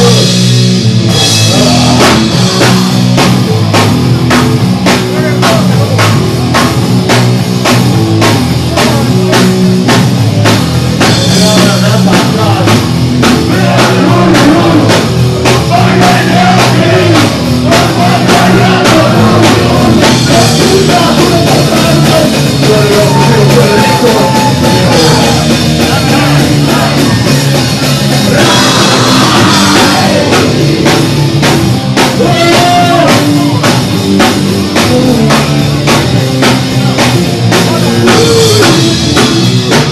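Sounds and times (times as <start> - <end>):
bass guitar: 0.0 - 39.9
distorted guitars: 0.0 - 39.9
pounding drums: 0.0 - 39.9
punk rock music: 0.0 - 39.9
singer shouting: 13.4 - 27.3, 28.2 - 30.6, 32.1 - 33.7.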